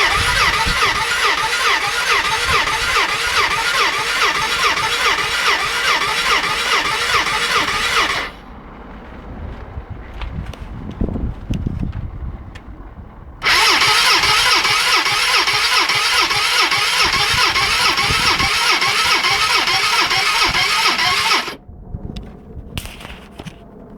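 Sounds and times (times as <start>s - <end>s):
electric starter cranking engine: 0.0s - 8.4s, 13.4s - 21.6s.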